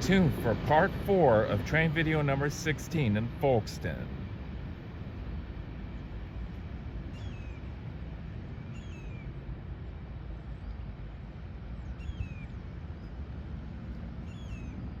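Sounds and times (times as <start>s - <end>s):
steady low rumble: 0.0s - 15.0s
bird chirping: 7.1s - 7.7s, 8.7s - 9.3s, 11.8s - 13.2s, 14.2s - 15.0s.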